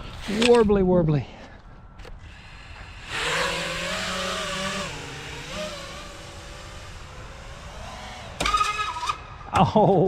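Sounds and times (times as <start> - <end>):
drone motors whining: 1.7 - 9.5.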